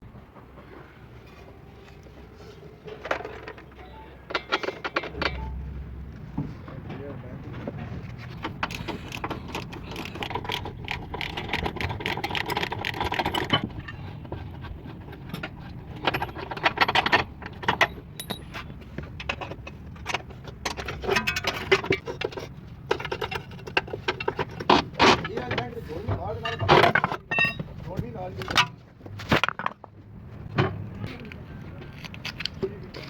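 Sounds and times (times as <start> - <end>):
metallic clinking and rattling: 2.8 - 6.1, 8.0 - 25.7, 26.3 - 27.8.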